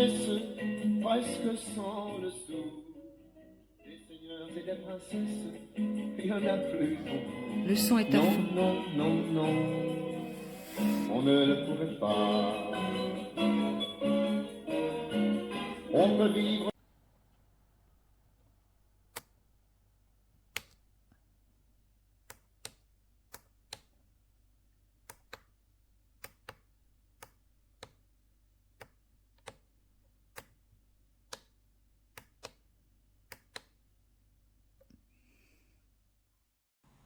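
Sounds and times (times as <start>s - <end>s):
sharp plastic clicks: 19.1s - 19.4s, 20.5s - 20.8s, 22.2s - 24.0s, 25.0s - 28.1s, 28.7s - 33.8s.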